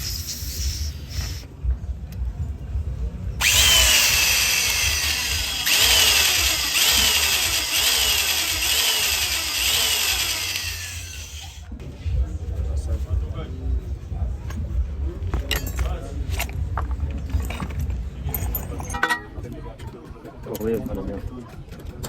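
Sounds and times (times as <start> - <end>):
electric drill boring into metal: 3.4 - 11.7.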